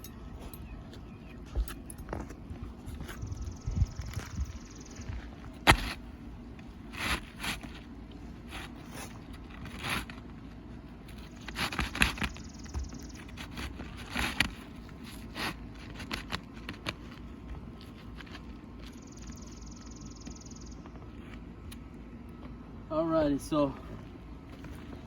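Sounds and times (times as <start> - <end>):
roof shingles scraping and rustling: 4.0 - 19.1.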